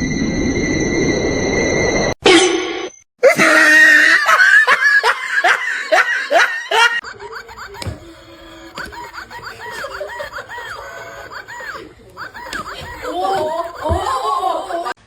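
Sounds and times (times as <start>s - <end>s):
person laughing hard: 3.2s - 15.0s.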